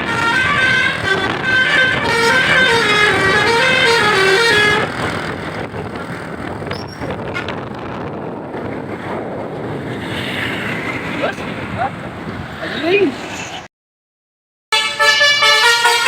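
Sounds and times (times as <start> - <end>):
multi-tone bus horn melody: 0.0 - 5.6, 14.7 - 16.0
road and engine noise: 0.0 - 13.7, 14.7 - 16.0.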